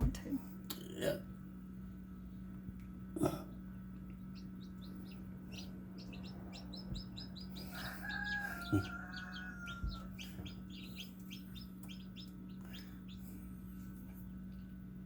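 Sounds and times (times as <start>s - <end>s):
steady low hum: 0.0s - 15.0s
chicks peeping: 3.5s - 15.0s.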